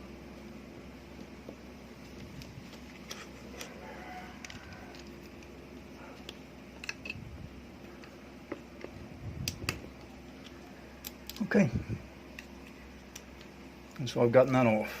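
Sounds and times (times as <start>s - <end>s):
steady low hum: 0.0s - 15.0s
small metal parts clicking: 4.4s - 5.5s, 6.2s - 7.2s.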